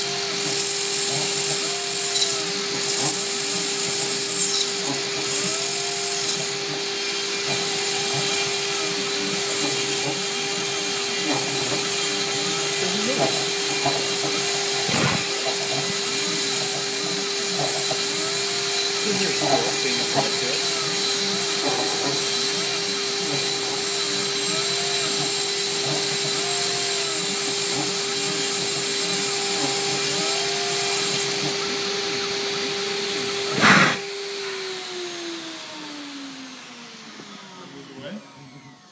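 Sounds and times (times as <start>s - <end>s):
router spindle whine: 0.0s - 38.9s
cutting hiss: 12.8s - 16.5s, 33.3s - 34.2s
short loud burst of noise: 33.5s - 34.1s.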